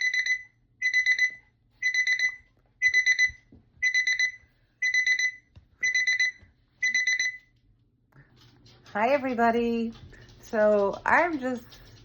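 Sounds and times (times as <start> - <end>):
alarm clock beeping: 0.0 - 7.5.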